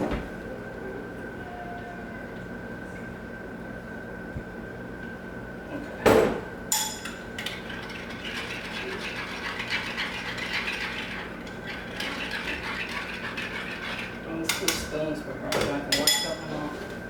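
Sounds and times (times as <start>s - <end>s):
spoon clinking against bowl: 6.7s - 7.2s
spoon scraping through sauce: 8.0s - 14.3s.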